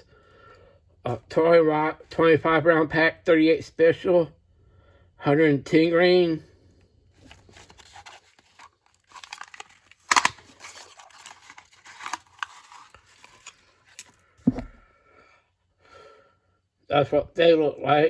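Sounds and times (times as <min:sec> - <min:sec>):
cardboard packaging crinkling: 0:07.2 - 0:14.6
heavy thump: 0:14.4 - 0:14.8.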